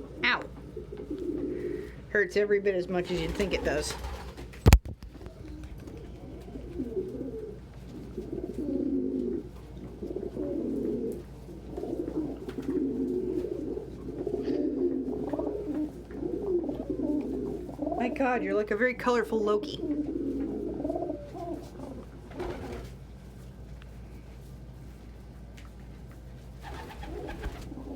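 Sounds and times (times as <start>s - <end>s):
pigeons cooing: 0.0s - 2.1s, 5.2s - 18.5s, 19.8s - 23.0s, 26.6s - 27.9s.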